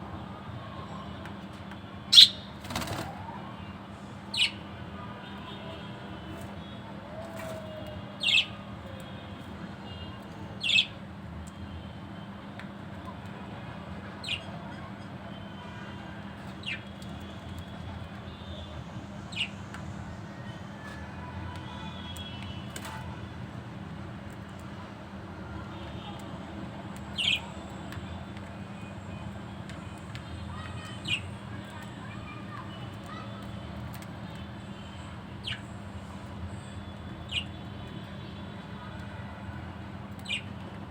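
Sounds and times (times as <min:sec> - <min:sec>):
budgerigars chirping: 0:02.1 - 0:02.5.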